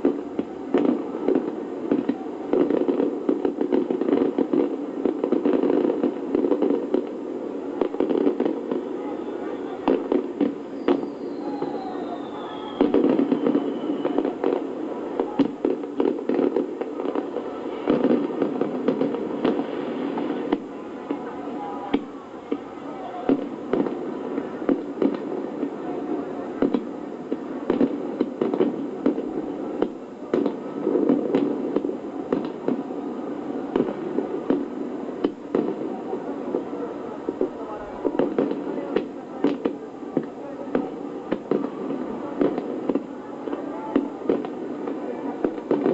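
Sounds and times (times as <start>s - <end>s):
fireworks bangs and crackling: 0.0s - 45.9s
falling firework whistle: 8.1s - 14.6s.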